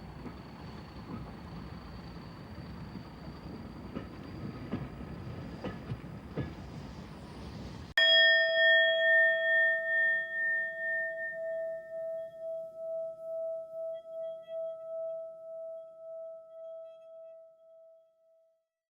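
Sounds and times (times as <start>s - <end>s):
train rumble: 0.0s - 8.0s
singing bowl ringing: 8.0s - 18.2s.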